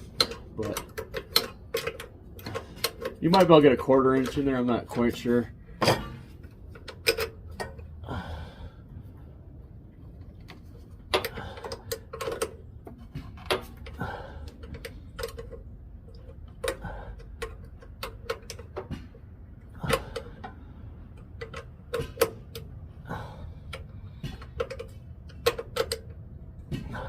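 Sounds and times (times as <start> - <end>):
wrench clicking on metal: 0.0 - 4.5, 13.4 - 19.2, 23.6 - 26.2.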